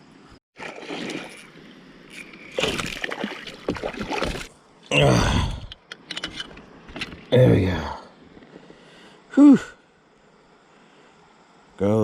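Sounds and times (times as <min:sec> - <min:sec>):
handling noises in a kayak: 0:00.6 - 0:04.7, 0:05.6 - 0:07.4, 0:08.2 - 0:08.8
water sloshing: 0:00.6 - 0:04.7
man grunting: 0:04.9 - 0:05.7.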